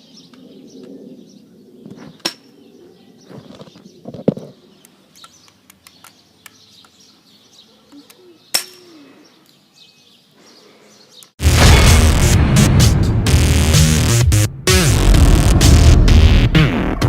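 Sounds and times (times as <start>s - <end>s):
loud electronic music: 11.4s - 17.0s.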